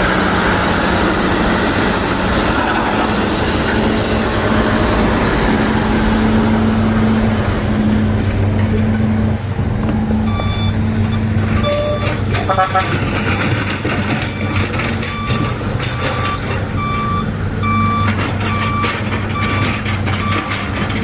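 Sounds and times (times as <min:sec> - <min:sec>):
diesel engine running: 0:00.0 - 0:21.0
short electronic beep: 0:10.3 - 0:13.0.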